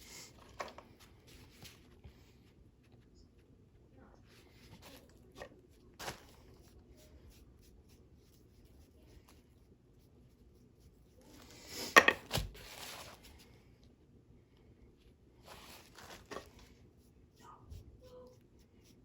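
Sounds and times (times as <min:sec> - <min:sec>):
clatter of handled objects: 0:15.5 - 0:16.7.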